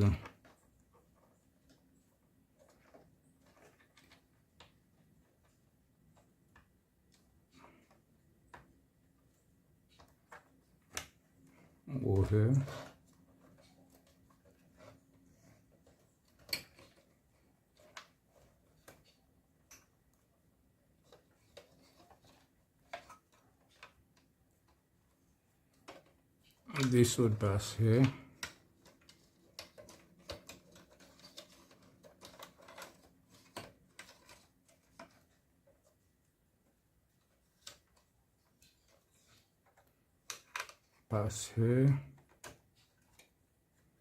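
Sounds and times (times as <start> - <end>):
clicks of cables and plastic: 2.6 - 8.8, 9.9 - 20.2, 21.0 - 36.1, 37.1 - 41.1, 41.8 - 43.9
cables and connectors clicking: 25.7 - 36.0, 37.2 - 41.2.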